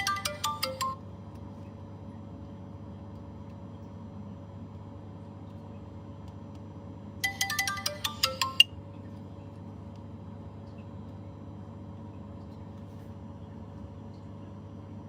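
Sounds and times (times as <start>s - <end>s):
phone keypad tones: 0.0s - 1.0s, 7.2s - 8.8s
steady electrical hum: 0.0s - 15.0s.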